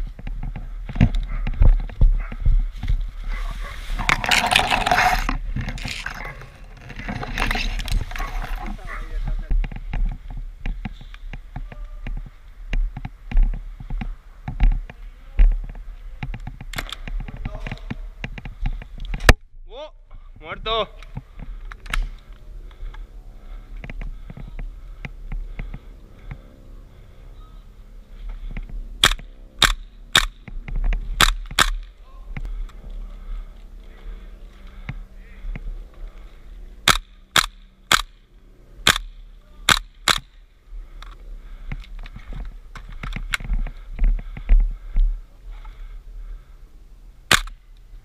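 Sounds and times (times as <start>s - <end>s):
small clicks and low bumps: 0.0s - 3.4s, 4.0s - 19.5s, 20.1s - 26.6s, 28.1s - 46.6s
steady low rumble: 0.0s - 48.0s
airsoft gun shots: 29.0s - 30.4s, 36.9s - 38.2s, 38.8s - 39.1s, 39.7s - 40.3s, 47.3s - 47.5s.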